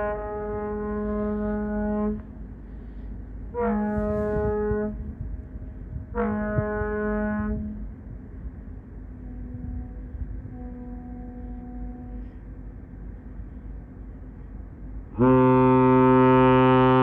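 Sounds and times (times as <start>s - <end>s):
ship's whistle blasts: 0.0s - 2.3s, 3.5s - 5.2s, 6.0s - 7.9s, 9.2s - 12.4s, 15.2s - 17.0s.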